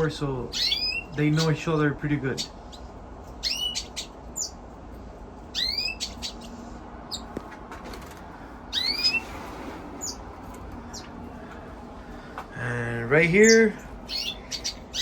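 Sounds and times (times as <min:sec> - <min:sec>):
finches whistled call notes: 0:00.5 - 0:01.7, 0:02.3 - 0:04.6, 0:05.5 - 0:07.3, 0:08.7 - 0:09.3, 0:13.2 - 0:15.0
short high bird chirps: 0:08.7 - 0:09.3.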